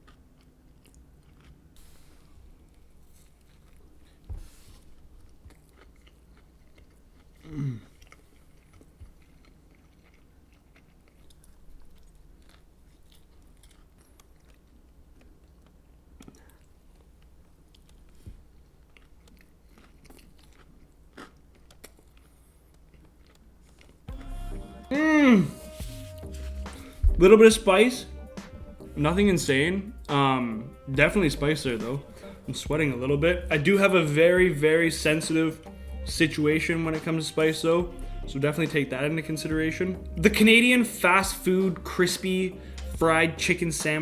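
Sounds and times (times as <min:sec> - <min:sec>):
chewing crispy food: 0:00.0 - 0:27.0
person humming appreciation: 0:07.5 - 0:07.8, 0:24.1 - 0:27.5.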